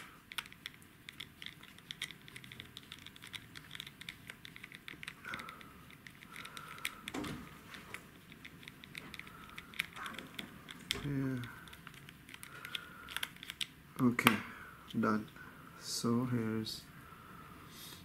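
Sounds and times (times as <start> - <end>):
screwdriver clicks and scratches: 0.0 - 7.2, 7.8 - 11.0, 11.6 - 13.7.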